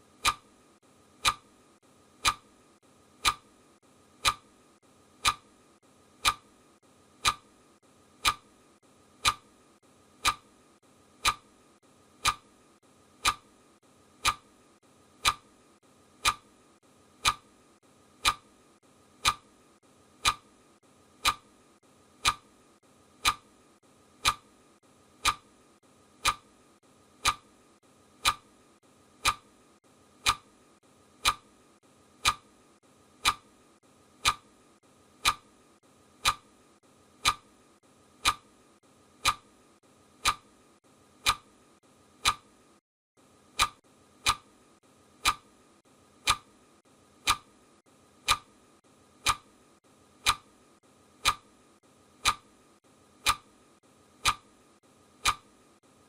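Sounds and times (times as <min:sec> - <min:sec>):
clock ticking: 0:00.2 - 0:00.5, 0:01.2 - 0:01.5, 0:02.2 - 0:02.6, 0:03.2 - 0:03.6, 0:04.2 - 0:04.5, 0:05.2 - 0:05.5, 0:06.2 - 0:06.5, 0:07.2 - 0:07.5, 0:08.2 - 0:08.5, 0:09.2 - 0:09.5, 0:10.2 - 0:10.5, 0:11.2 - 0:11.6, 0:12.2 - 0:12.6, 0:13.2 - 0:13.6, 0:14.2 - 0:14.6, 0:15.2 - 0:15.6, 0:16.2 - 0:16.6, 0:17.2 - 0:17.6, 0:18.2 - 0:18.5, 0:19.2 - 0:19.5, 0:20.2 - 0:20.5, 0:21.2 - 0:21.5, 0:22.2 - 0:22.5, 0:23.2 - 0:23.5, 0:24.2 - 0:24.5, 0:25.2 - 0:25.5, 0:26.2 - 0:26.5, 0:27.2 - 0:27.5, 0:28.2 - 0:28.5, 0:29.2 - 0:29.5, 0:30.2 - 0:30.5, 0:31.2 - 0:31.5, 0:32.2 - 0:32.5, 0:33.2 - 0:33.5, 0:34.2 - 0:34.5, 0:35.2 - 0:35.5, 0:36.2 - 0:36.5, 0:37.2 - 0:37.5, 0:38.2 - 0:38.5, 0:39.2 - 0:39.5, 0:40.2 - 0:40.5, 0:41.2 - 0:41.5, 0:42.2 - 0:42.5, 0:43.6 - 0:44.5, 0:45.2 - 0:45.5, 0:46.2 - 0:46.5, 0:47.2 - 0:47.5, 0:48.2 - 0:48.5, 0:49.2 - 0:49.5, 0:50.2 - 0:50.5, 0:51.2 - 0:51.5, 0:52.2 - 0:52.5, 0:53.2 - 0:53.5, 0:54.2 - 0:54.5, 0:55.2 - 0:55.5.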